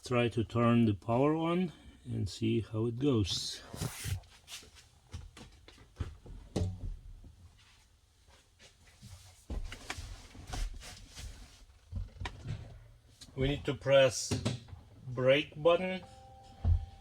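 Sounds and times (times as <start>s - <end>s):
objects handled in car cabin: 9.1s - 13.5s, 16.1s - 17.0s.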